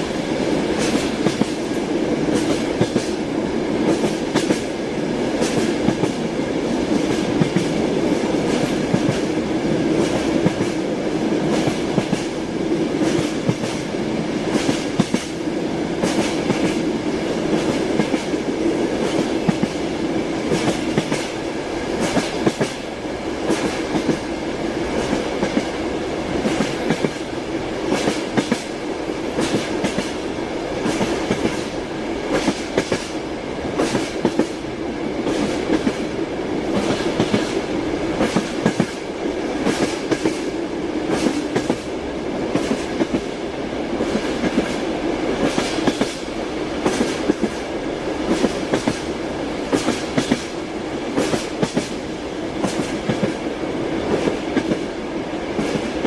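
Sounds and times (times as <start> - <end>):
train wheels clattering: 0.7 - 3.2, 3.8 - 4.8, 5.4 - 6.3, 13.0 - 15.4, 16.0 - 22.8, 24.9 - 30.2, 30.8 - 33.2, 33.8 - 34.6, 35.2 - 36.0, 36.7 - 41.9, 44.0 - 53.5.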